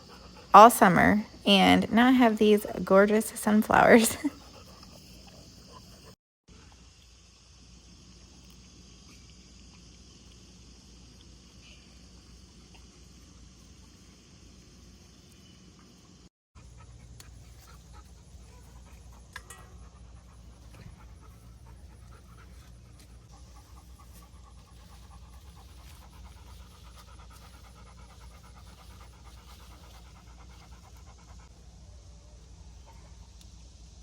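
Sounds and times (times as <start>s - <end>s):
dog panting: 0.0s - 1.2s, 3.9s - 6.2s, 16.6s - 31.9s.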